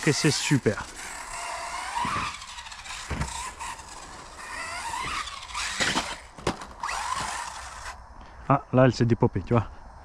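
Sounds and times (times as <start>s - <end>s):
electric motor whining: 0.0s - 8.0s.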